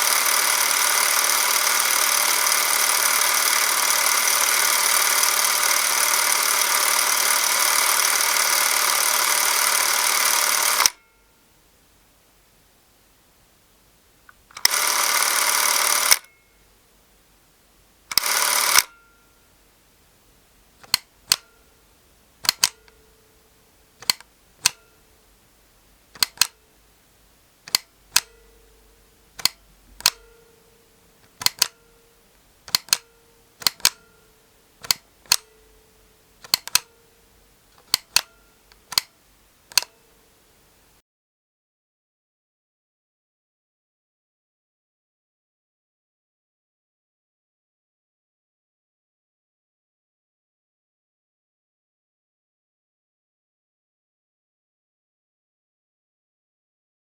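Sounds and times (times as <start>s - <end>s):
movie camera mechanism running: 0.0s - 11.0s, 14.5s - 16.3s, 18.1s - 18.9s, 22.4s - 22.9s, 24.0s - 24.8s, 26.1s - 26.6s, 27.6s - 28.4s, 31.3s - 31.8s, 32.7s - 33.0s, 33.6s - 34.0s, 34.8s - 35.6s, 36.4s - 36.9s, 39.7s - 39.9s
sharp mechanical clicks: 0.0s - 11.0s, 14.3s - 16.4s, 18.1s - 19.0s, 20.8s - 21.5s, 22.4s - 23.0s, 24.0s - 24.9s, 26.1s - 26.6s, 27.6s - 28.5s, 29.4s - 30.4s, 31.2s - 31.8s, 32.6s - 34.2s, 34.8s - 35.6s, 36.4s - 37.0s, 37.8s - 40.0s.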